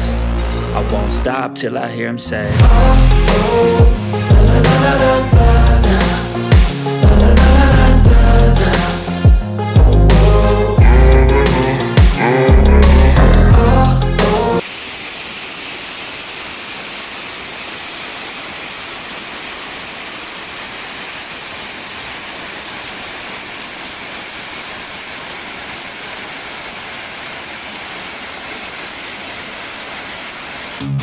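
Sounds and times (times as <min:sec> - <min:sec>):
song: 0:00.0 - 0:14.6
waterfall rushing: 0:02.6 - 0:09.2, 0:14.3 - 0:30.8.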